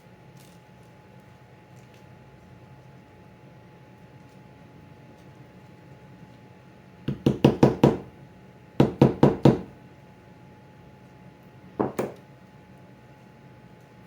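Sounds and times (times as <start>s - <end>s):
sharp knocks on wood: 7.1s - 8.1s, 8.8s - 9.7s, 11.8s - 12.2s.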